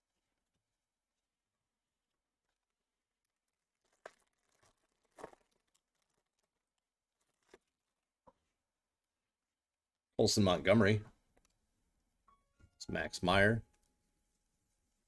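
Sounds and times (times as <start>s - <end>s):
cards and wrappers rustling: 3.4s - 8.1s.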